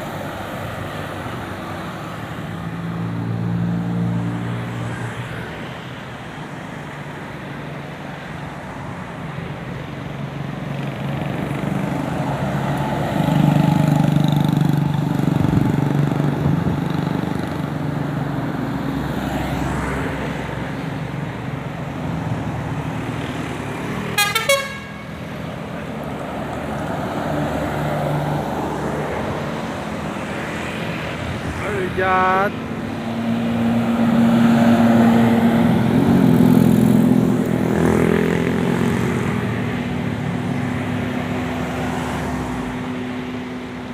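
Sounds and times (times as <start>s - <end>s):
buses passing in traffic: 0.0s - 43.9s
bus multi-tone horn: 24.2s - 25.2s.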